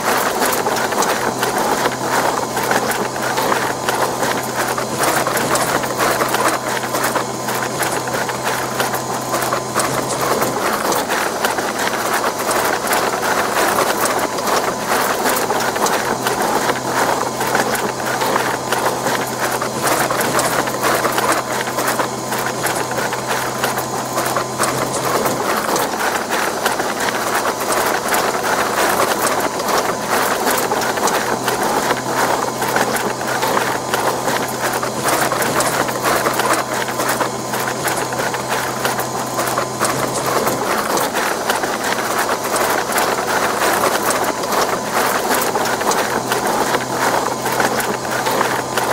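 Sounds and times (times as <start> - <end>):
dough mixer motor hum: 0.0 - 48.9
rapid kneading clatter: 0.0 - 48.9.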